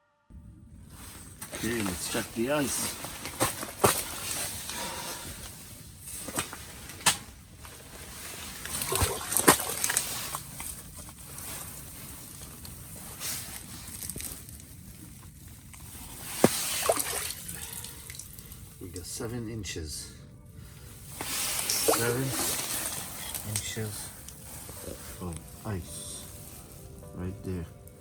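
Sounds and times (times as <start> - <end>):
slush and water sloshing: 7.8 - 18.8, 21.0 - 26.8.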